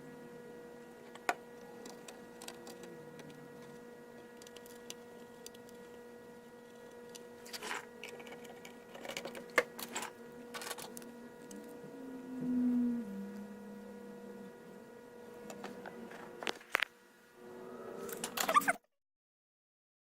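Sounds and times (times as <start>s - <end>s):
electrical hum: 0.0s - 18.8s
low tone: 10.4s - 16.5s.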